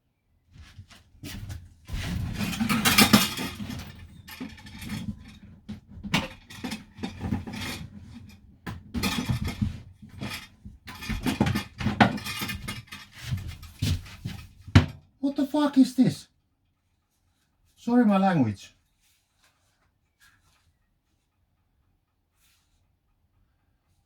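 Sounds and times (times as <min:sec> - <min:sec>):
hard parts clinking and rattling: 0:01.2 - 0:14.7.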